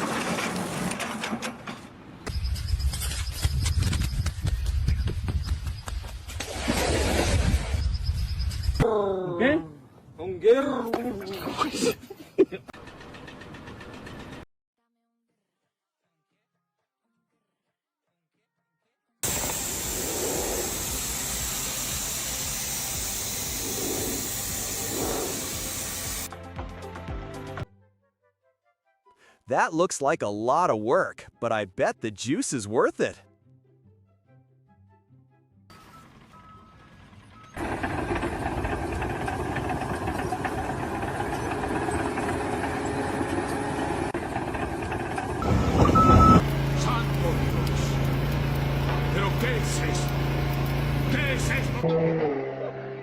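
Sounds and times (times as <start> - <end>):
engine running: 19.2 - 26.3, 35.7 - 51.9
loud steady hiss: 19.2 - 26.3.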